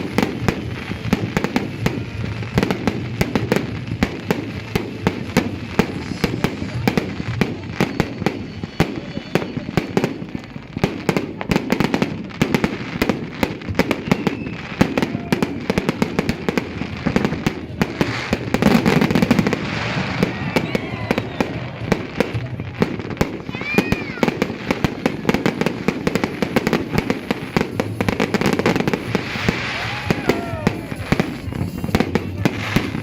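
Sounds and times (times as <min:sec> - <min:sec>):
fireworks bangs and crackles: 0:00.0 - 0:33.0.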